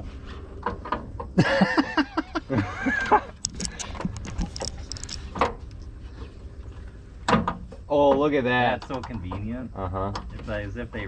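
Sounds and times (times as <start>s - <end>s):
person laughing: 1.4s - 4.4s.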